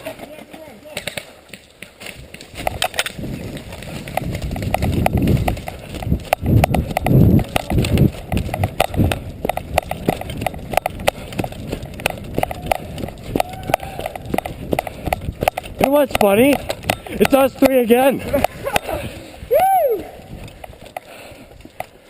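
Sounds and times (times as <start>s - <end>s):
sharp clicks: 1.0s - 18.9s.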